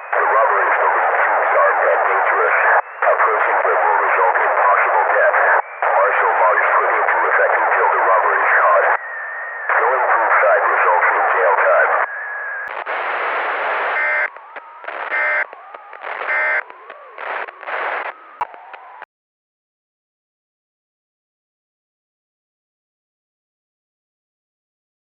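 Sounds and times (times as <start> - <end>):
distorted radio static: 0.0 - 19.1.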